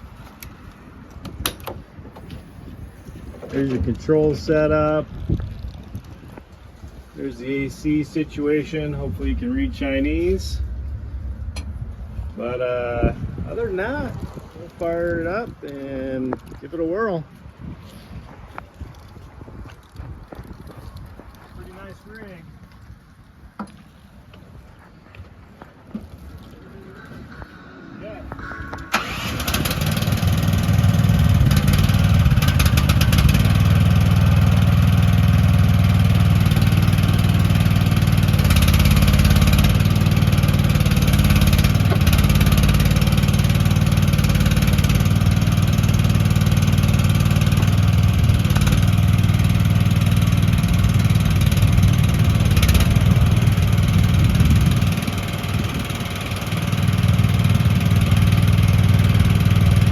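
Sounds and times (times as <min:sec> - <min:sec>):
excavator engine running: 0:25.8 - 0:59.9.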